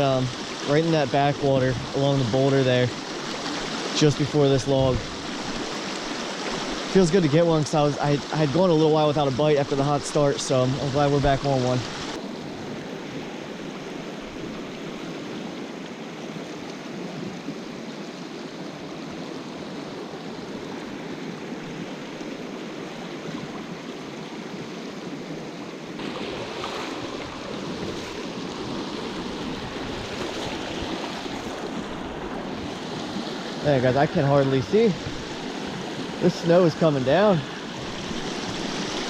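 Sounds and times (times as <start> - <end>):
stream rushing over rocks: 0.0 - 39.0.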